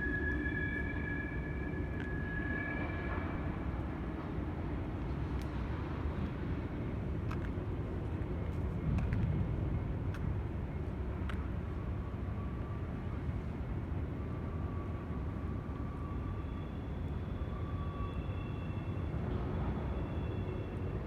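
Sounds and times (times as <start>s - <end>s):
faint high whine: 0.0s - 4.7s.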